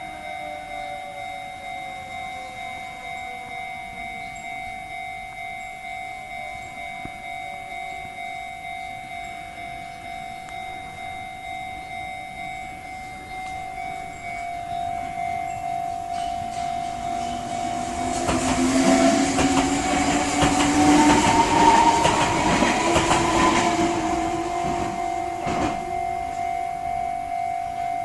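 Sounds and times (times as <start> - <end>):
level crossing warning bell: 0.0 - 28.0
electric train motor whining: 8.1 - 28.0
train wheels clattering: 14.2 - 26.5.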